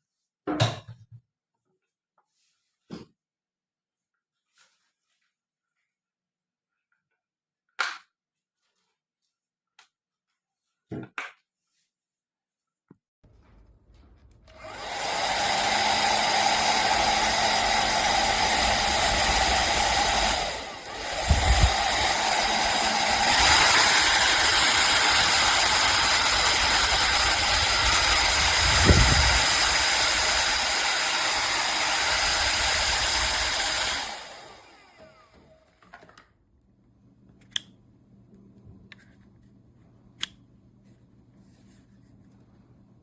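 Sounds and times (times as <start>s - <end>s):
hair dryer blowing: 14.5s - 35.6s.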